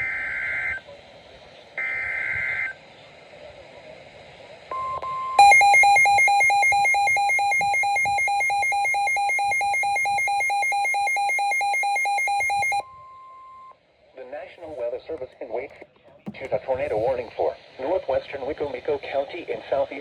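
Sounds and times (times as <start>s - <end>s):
electronic alarm beeping: 4.8s - 13.7s
steady warning alarm tone: 5.4s - 13.7s.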